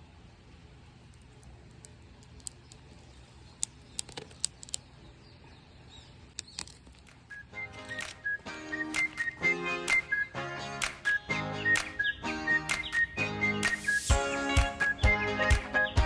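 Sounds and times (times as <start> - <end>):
faint low background noise: 0.0 - 16.0
sharp clicks and snaps: 1.0 - 5.0, 6.3 - 8.3.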